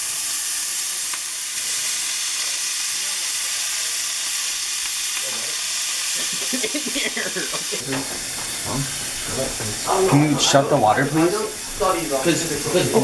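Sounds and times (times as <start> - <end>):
garlic sizzling in a frying pan: 0.0 - 13.0.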